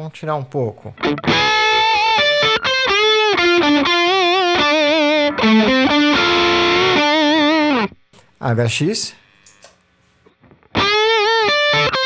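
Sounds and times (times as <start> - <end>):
overdriven electric guitar melody: 1.0 - 7.8.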